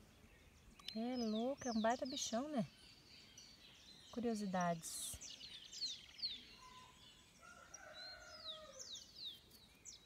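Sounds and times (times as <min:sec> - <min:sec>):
small birds chirping: 0:00.0 - 0:10.0
distant rooster crowing: 0:07.4 - 0:08.9.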